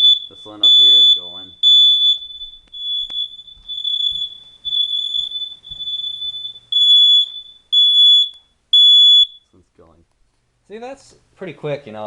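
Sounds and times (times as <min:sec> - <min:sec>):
smoke alarms beeping: 0:00.0 - 0:09.6.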